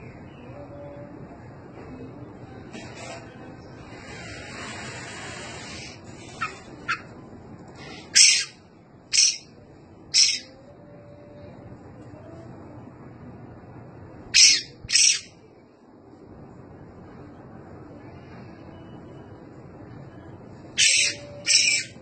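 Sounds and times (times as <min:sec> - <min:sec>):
small bird chirping: 0:09.1 - 0:09.4, 0:10.1 - 0:10.5, 0:20.8 - 0:21.9.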